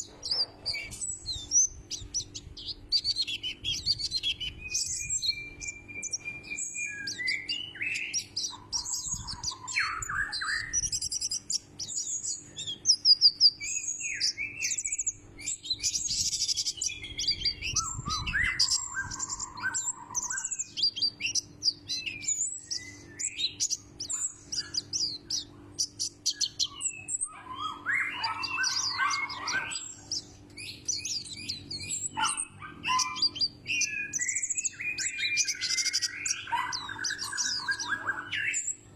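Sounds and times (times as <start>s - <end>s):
bird twittering chirps: 0.0s - 38.9s
bird warbled phrases: 7.6s - 10.9s, 16.3s - 21.4s, 26.4s - 30.1s, 32.1s - 34.0s, 35.2s - 38.6s.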